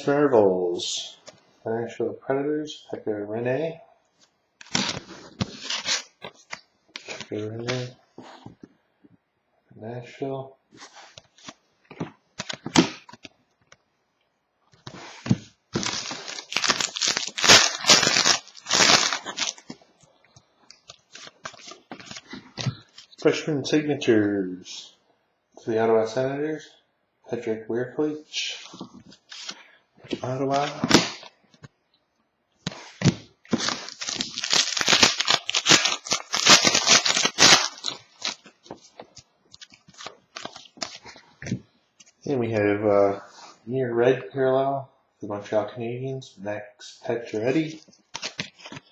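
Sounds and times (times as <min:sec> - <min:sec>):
plastic wrapper crinkling and tearing: 0:04.6 - 0:07.3, 0:15.7 - 0:19.8, 0:20.7 - 0:23.2, 0:28.7 - 0:29.6, 0:33.5 - 0:41.2, 0:47.6 - 0:48.9.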